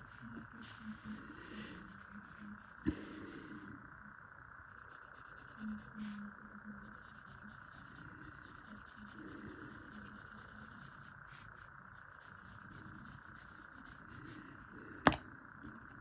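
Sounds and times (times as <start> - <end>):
pencil scratching on paper: 0.0 - 3.1, 4.7 - 14.5.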